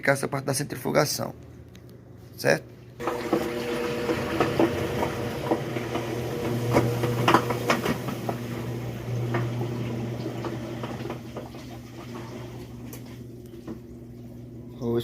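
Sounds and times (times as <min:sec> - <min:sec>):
washing machine clicks and knocks: 0:03.0 - 0:12.4
running water: 0:03.0 - 0:14.4
drain pump hum: 0:03.0 - 0:15.0.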